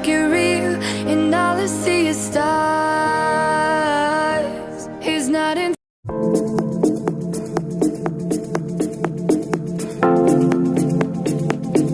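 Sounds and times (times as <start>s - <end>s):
electronic music with plucked notes: 6.1s - 11.9s.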